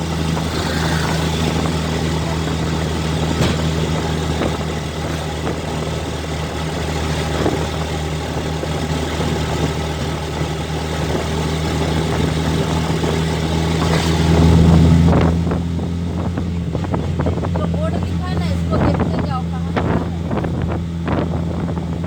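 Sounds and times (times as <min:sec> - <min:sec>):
road noise: 0:00.0 - 0:22.0
vehicle engine humming: 0:00.0 - 0:22.0.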